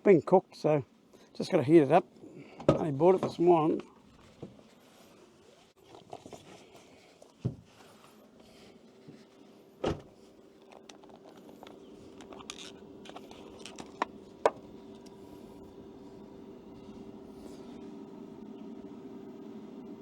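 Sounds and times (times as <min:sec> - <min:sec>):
air fryer humming: 0:08.0 - 0:20.0
handling knocks and clicks: 0:09.9 - 0:15.2.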